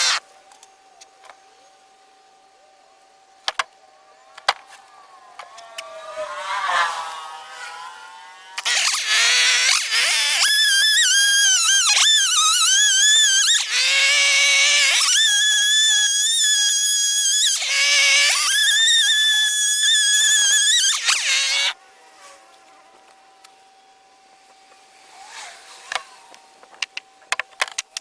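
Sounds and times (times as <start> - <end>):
chainsaw cutting wood: 0.0 - 0.2, 8.6 - 21.8.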